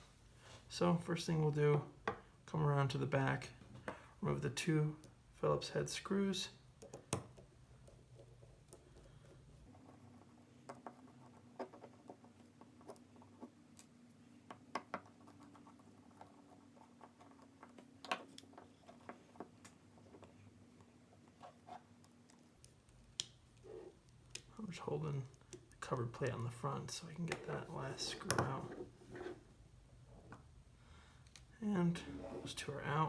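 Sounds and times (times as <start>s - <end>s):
faint steady hum: 15.4s - 33.0s.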